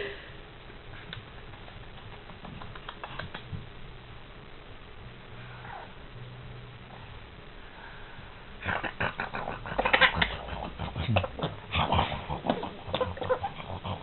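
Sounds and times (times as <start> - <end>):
dog low grunt: 8.6 - 14.0.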